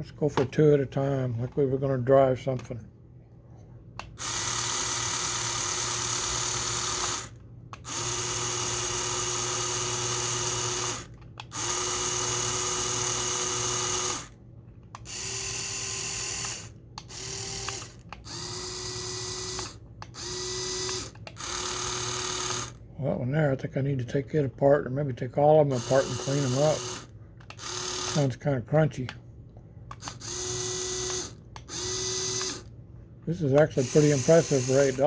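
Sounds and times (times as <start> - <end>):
toy motors whining: 4.0 - 22.8, 25.7 - 28.4, 29.9 - 32.7, 33.3 - 35.0.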